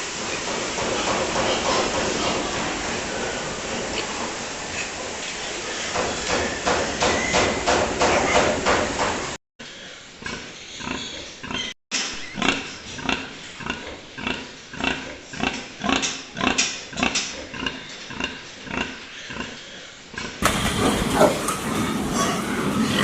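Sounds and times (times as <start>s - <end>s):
pigs grunting: 9.7s - 23.0s.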